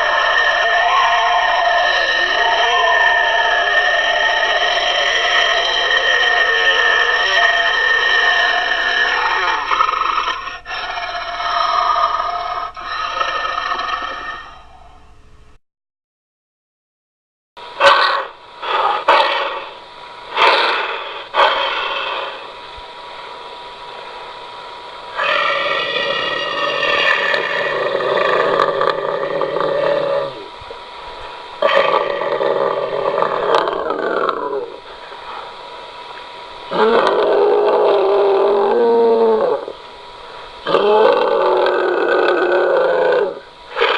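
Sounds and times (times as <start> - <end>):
altered voice dinosaur calls: 0.0 - 14.7, 25.1 - 30.5, 31.6 - 34.9, 36.7 - 39.8, 40.6 - 43.9.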